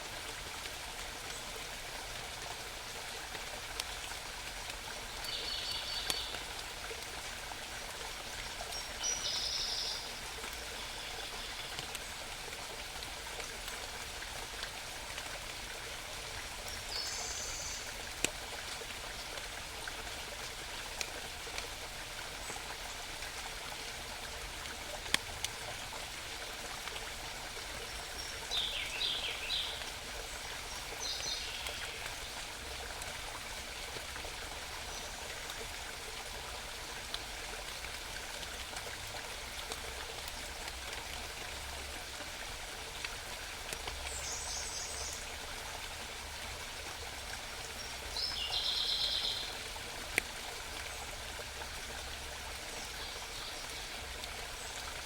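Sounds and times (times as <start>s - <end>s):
mountain stream murmur: 0.0s - 55.0s
small birds singing: 5.3s - 6.5s, 8.7s - 11.9s, 28.1s - 32.2s, 44.0s - 45.3s, 47.8s - 49.6s.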